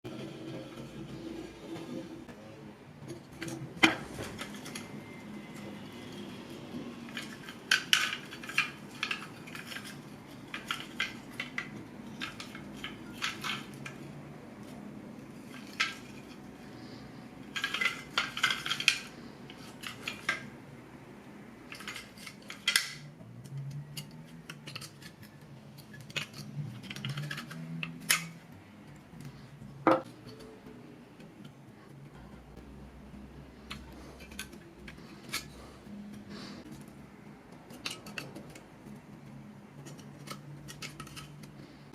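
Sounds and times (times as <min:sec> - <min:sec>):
small metal parts clinking: 0:07.0 - 0:20.5, 0:21.7 - 0:28.4.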